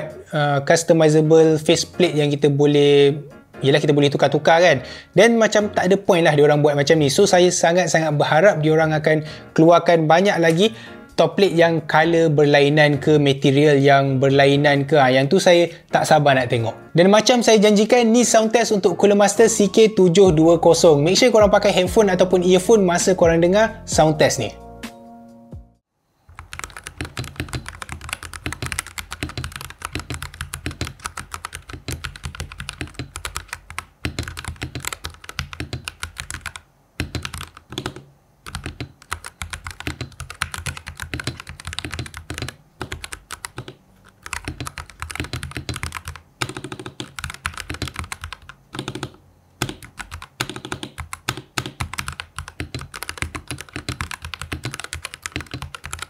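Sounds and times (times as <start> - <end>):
mechanical keyboard typing: 26.3 - 56.0.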